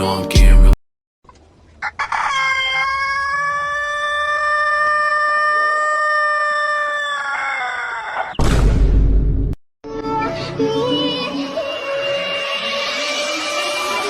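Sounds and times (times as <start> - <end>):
rooster crowing: 1.8 - 8.4.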